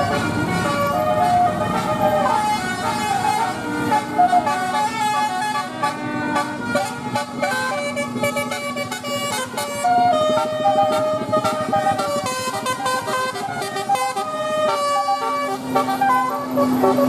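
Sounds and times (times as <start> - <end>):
musical bus air horn: 0.0 - 17.0.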